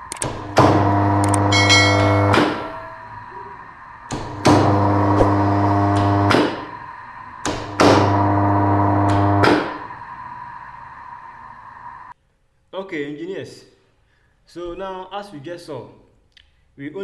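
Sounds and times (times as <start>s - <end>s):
electric motor humming: 0.0s - 12.1s
contactor clicking: 0.0s - 12.2s.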